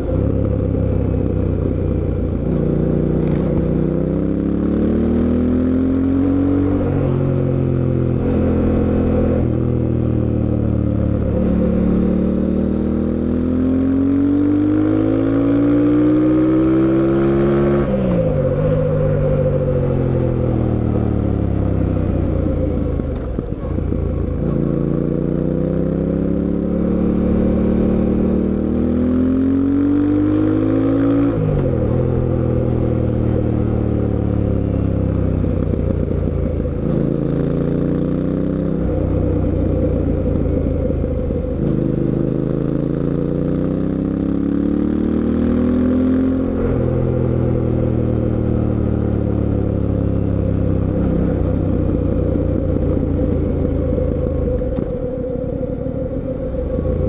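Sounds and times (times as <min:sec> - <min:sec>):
motorcycle engine accelerating: 0:00.0 - 0:57.0.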